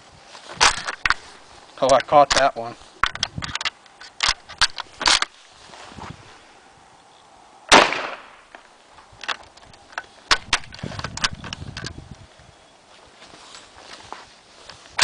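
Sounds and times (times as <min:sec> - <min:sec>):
rifle shot: 0:07.7 - 0:08.5.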